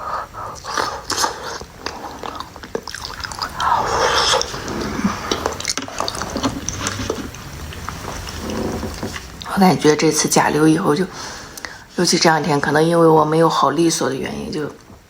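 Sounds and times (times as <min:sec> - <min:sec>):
mouth clicks: 0:00.0 - 0:08.6
person chewing food: 0:00.0 - 0:09.5.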